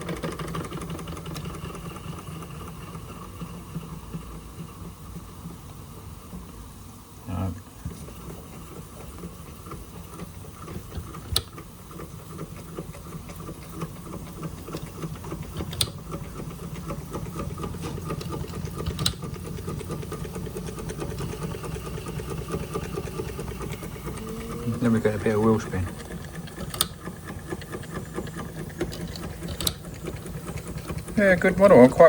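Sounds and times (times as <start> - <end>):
toy steam engine chattering: 8.2 - 32.0.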